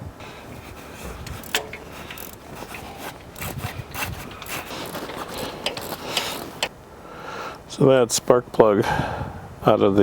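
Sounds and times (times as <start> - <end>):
ratchet wrench clicking: 1.2 - 6.7.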